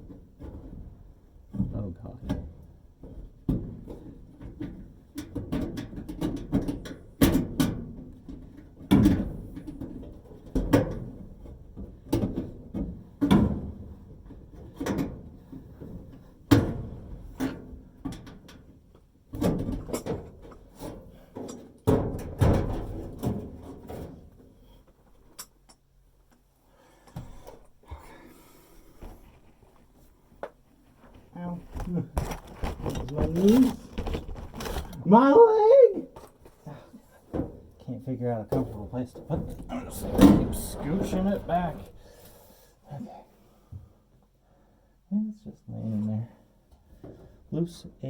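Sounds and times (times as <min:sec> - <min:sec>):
knocks and scrapes on dryer: 0:38.5 - 0:42.2.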